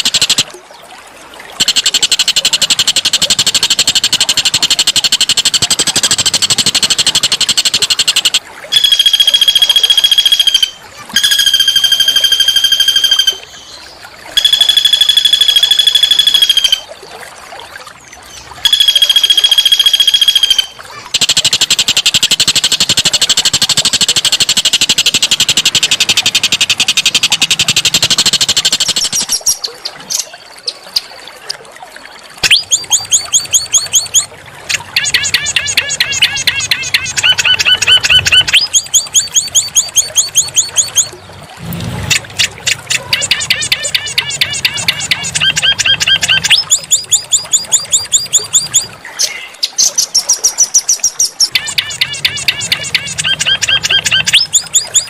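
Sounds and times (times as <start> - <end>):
songbird buzzy trill and notes: 6.5 - 13.8, 14.4 - 16.9.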